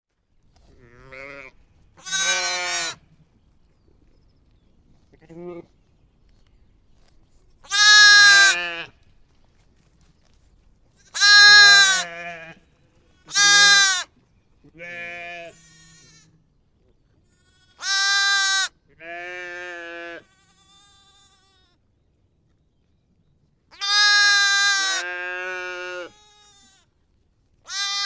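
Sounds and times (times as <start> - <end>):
sheep bleating: 0.7 - 3.0, 7.7 - 9.0, 11.1 - 14.1, 14.8 - 16.4, 17.3 - 21.8, 23.7 - 26.9, 27.7 - 28.0.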